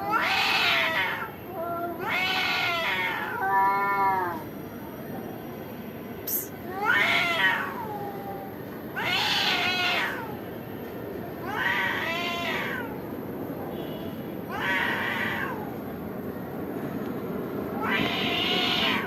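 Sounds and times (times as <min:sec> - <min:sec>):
cats yowling: 0:00.0 - 0:04.4, 0:06.7 - 0:10.4, 0:11.4 - 0:13.0, 0:14.5 - 0:15.8, 0:17.8 - 0:19.0.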